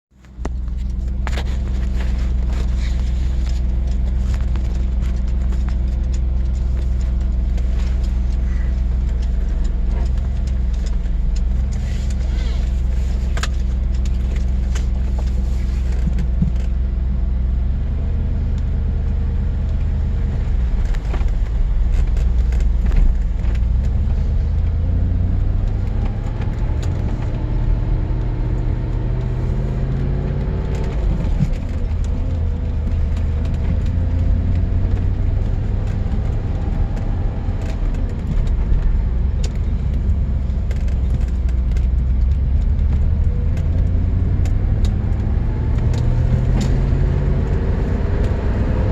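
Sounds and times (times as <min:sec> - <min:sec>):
car engine revving: 0:00.2 - 0:48.9.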